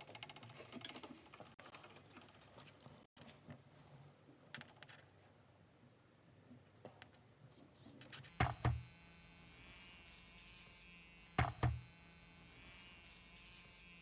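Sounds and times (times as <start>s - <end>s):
small motor buzzing: 8.3s - 14.0s.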